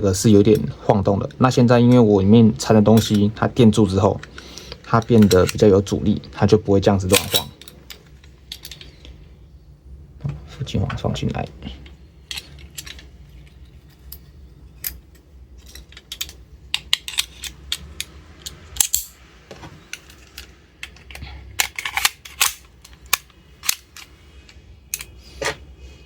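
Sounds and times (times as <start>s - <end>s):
pistol parts clicking and clacking: 4.2s - 5.7s, 7.1s - 9.0s, 11.8s - 14.2s, 14.8s - 19.2s, 19.9s - 25.2s.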